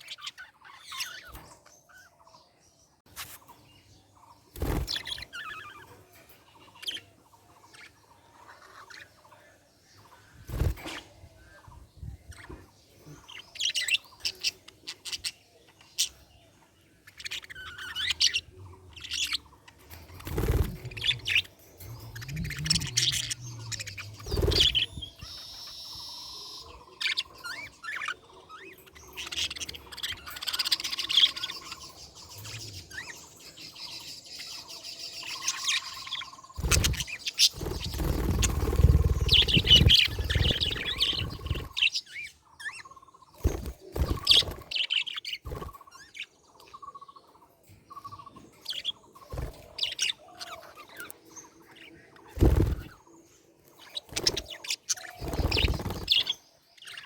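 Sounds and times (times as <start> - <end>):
budgerigars chirping and warbling: 0.0 - 57.0.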